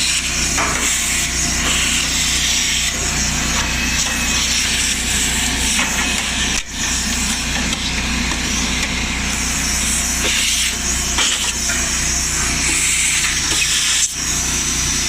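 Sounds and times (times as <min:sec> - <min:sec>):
shop vac running: 0:00.0 - 0:15.0
generator engine humming: 0:02.3 - 0:13.4.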